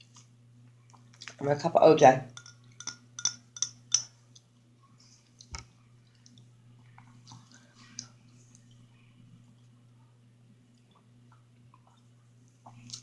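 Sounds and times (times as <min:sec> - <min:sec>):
steady low hum: 0:00.0 - 0:13.0
cup clicking and tapping: 0:02.4 - 0:04.1.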